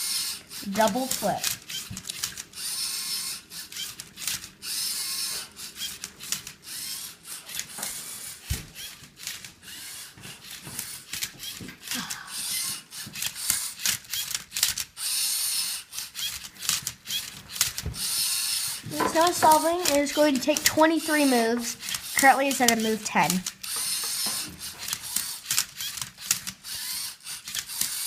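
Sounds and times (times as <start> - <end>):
robot motors running: 0.0 - 28.0
plastic clicks and clatters: 1.1 - 2.5.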